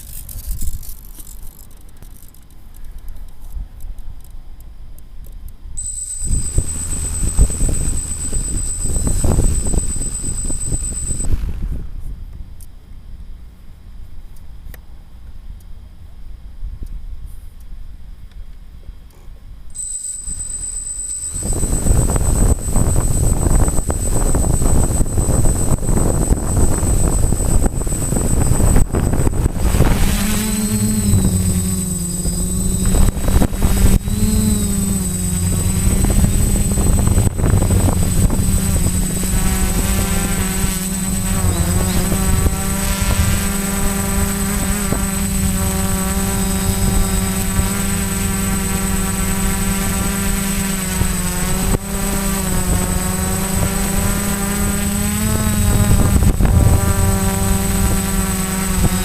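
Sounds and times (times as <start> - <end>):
high steady whine: 5.5 - 14.1, 19.7 - 59.0
quadcopter motors buzzing: 5.8 - 12.1, 19.8 - 59.0.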